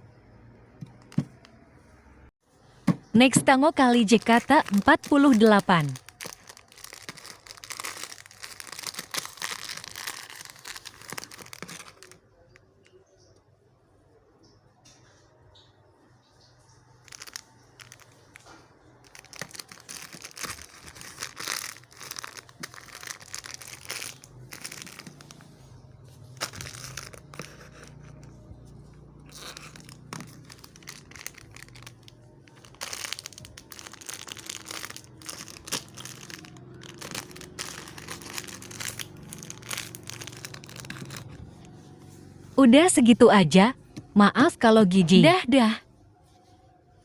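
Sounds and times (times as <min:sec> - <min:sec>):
plastic packaging crinkling: 0:00.8 - 0:01.5, 0:03.0 - 0:12.8, 0:17.0 - 0:42.3.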